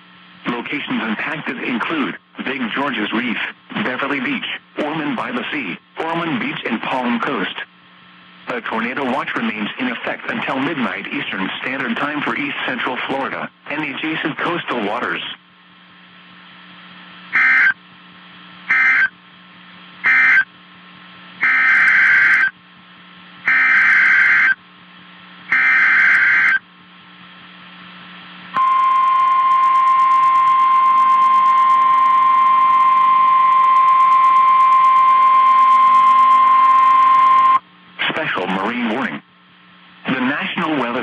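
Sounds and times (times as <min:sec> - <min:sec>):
steady warning alarm tone: 0:17.3 - 0:17.8, 0:18.7 - 0:19.2, 0:20.0 - 0:20.5, 0:21.4 - 0:22.6, 0:23.4 - 0:24.6, 0:25.5 - 0:26.7, 0:28.6 - 0:37.6
screechy digital data bursts: 0:17.4 - 0:17.8, 0:18.7 - 0:19.1, 0:20.0 - 0:20.5, 0:21.4 - 0:22.5, 0:23.5 - 0:24.6, 0:25.5 - 0:26.6.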